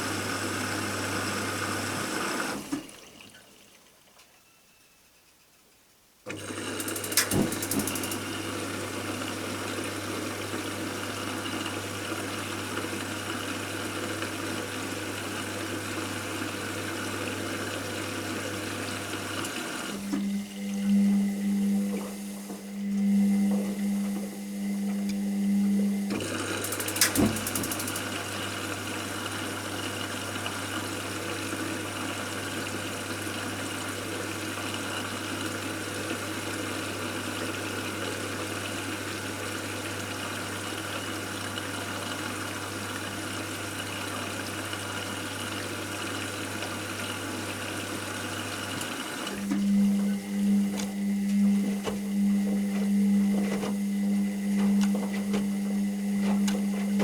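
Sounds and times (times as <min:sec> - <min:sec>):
washing machine motor hum: 0:00.0 - 0:03.8, 0:06.3 - 0:57.0
loud wavering hum: 0:20.0 - 0:26.2, 0:49.4 - 0:57.0.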